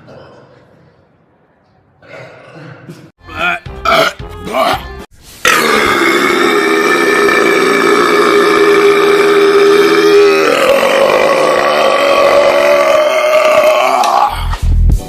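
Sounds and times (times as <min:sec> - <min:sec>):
long loud burp: 0:05.4 - 0:14.5.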